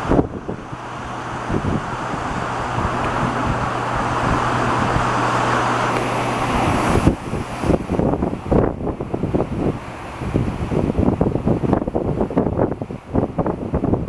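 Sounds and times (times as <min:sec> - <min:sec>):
gusts buffeting microphone: 0:00.0 - 0:14.0
steady low hum: 0:00.0 - 0:14.0
storm wind rushing: 0:00.0 - 0:14.0.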